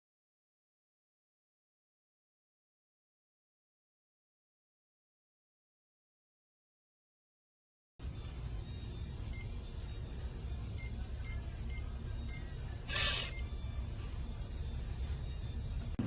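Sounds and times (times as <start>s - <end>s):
low steady hum: 8.0s - 16.0s
short faint electronic beeps: 9.3s - 14.0s.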